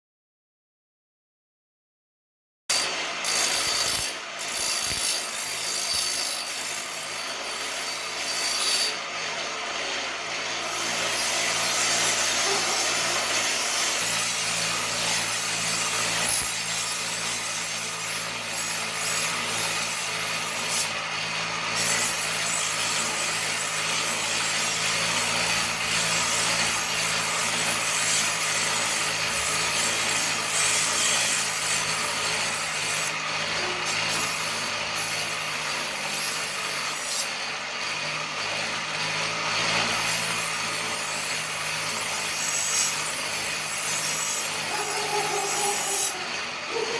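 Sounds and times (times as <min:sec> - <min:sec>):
knife scraping on sharpener: 0:41.2 - 0:46.9.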